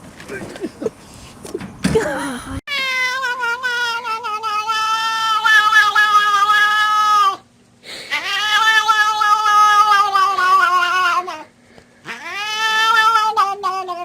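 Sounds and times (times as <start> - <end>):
cat yowling: 2.7 - 7.4, 8.1 - 14.0.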